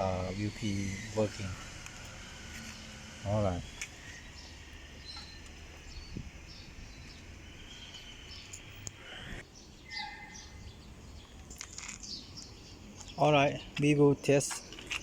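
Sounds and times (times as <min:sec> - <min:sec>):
short high bird chirps: 0:09.8 - 0:10.7.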